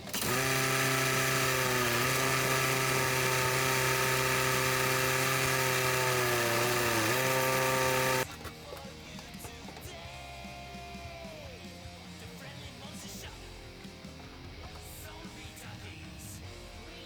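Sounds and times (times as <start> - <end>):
power tool motor whining: 0.0 - 8.3.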